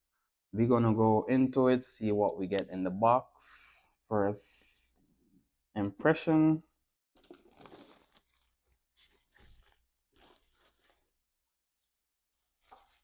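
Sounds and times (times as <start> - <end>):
packaging pulled open: 7.2 - 8.6.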